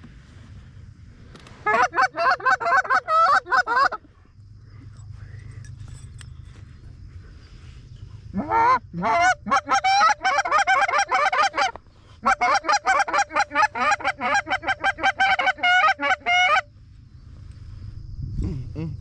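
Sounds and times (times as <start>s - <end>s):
goose call clucks and honks: 1.6s - 4.1s, 8.3s - 16.7s.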